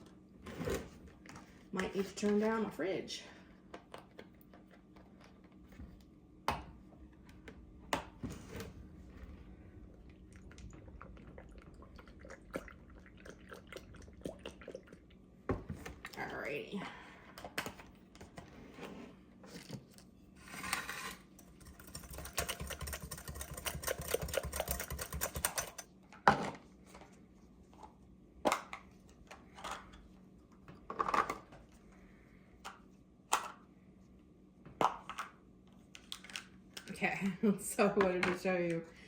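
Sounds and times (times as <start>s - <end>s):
whisking in a bowl: 21.4s - 25.8s.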